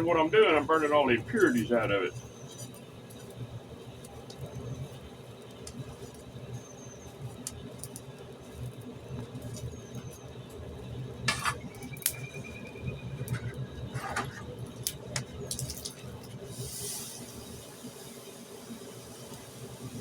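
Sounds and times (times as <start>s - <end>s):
coal crackling and clinking: 0.0s - 18.0s
forge fire rumbling: 0.0s - 20.0s.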